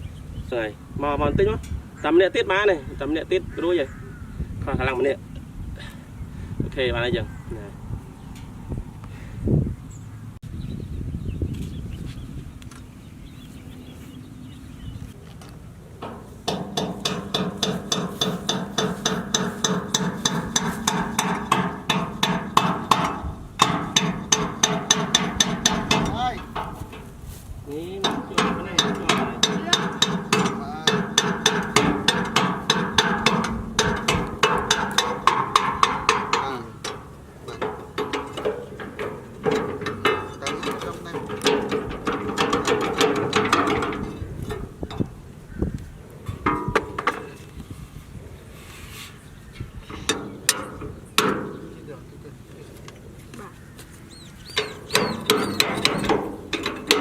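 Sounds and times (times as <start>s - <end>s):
tractor engine knocking: 16.0s - 45.6s, 54.2s - 57.0s.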